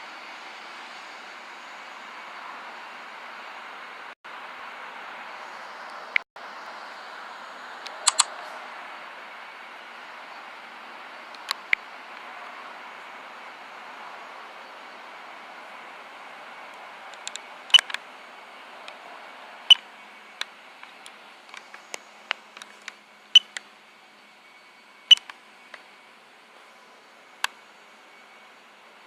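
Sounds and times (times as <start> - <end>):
bird pecking at camera: 8.0 - 8.3.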